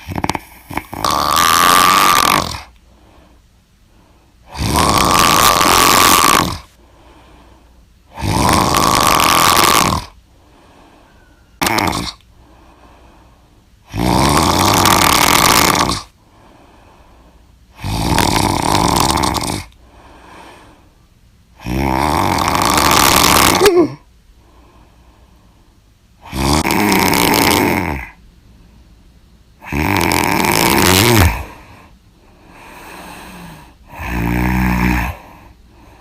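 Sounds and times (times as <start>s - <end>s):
person snoring loudly: 0.0s - 2.7s, 4.5s - 6.7s, 8.1s - 10.2s, 11.6s - 12.2s, 13.9s - 16.1s, 17.8s - 19.8s, 21.6s - 24.0s, 26.2s - 28.2s, 29.6s - 31.8s, 32.6s - 35.5s.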